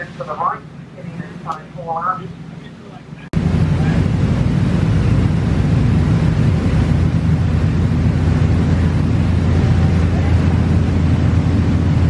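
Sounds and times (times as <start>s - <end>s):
boat engine droning: 0.0s - 12.0s
wind buffeting microphone: 2.4s - 12.0s.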